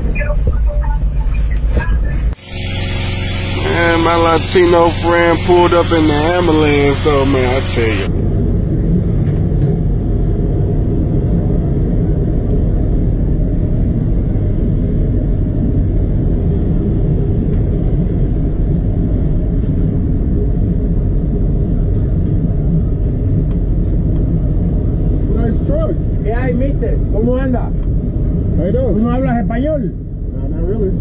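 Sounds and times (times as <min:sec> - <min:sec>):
diesel truck engine idling: 0:02.4 - 0:08.1.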